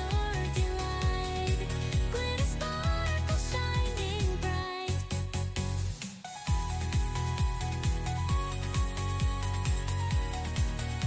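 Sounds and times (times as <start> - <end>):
kick drum: 0.0 - 5.8, 6.5 - 11.0.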